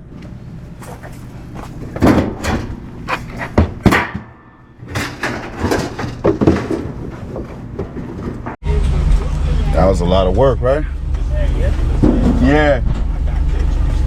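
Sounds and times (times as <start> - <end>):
scrap metal knocks and clanks: 0.0 - 8.6, 11.1 - 13.8.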